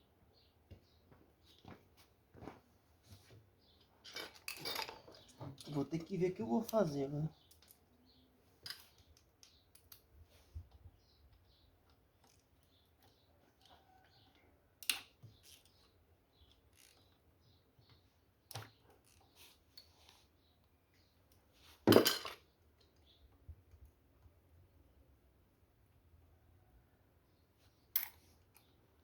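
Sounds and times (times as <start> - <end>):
metal tools clinking and tapping: 3.9 - 7.8.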